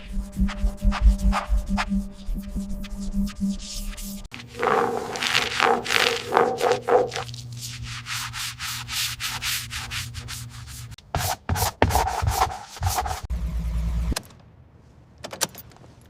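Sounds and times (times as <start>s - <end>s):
low hum: 0.0s - 8.0s
rhythmic rubbing strokes: 0.0s - 11.0s.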